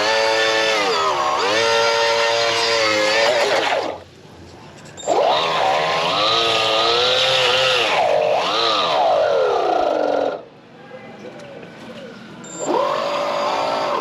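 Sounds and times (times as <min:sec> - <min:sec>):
electric motor whining: 0:00.0 - 0:04.0, 0:05.0 - 0:10.4, 0:12.6 - 0:14.0.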